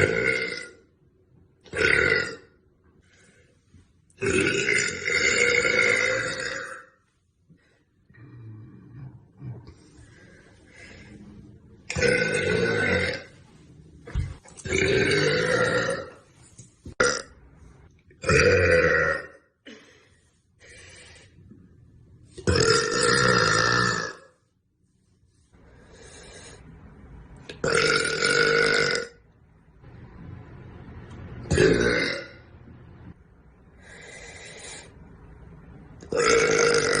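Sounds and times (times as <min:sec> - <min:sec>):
woman burping: 0:00.0 - 0:00.8, 0:04.2 - 0:07.0, 0:22.4 - 0:24.3, 0:27.6 - 0:29.2, 0:31.5 - 0:32.4.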